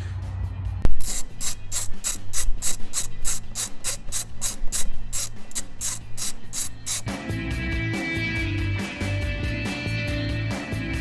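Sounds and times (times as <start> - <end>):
ratchet wrench clicking: 0.9 - 7.1.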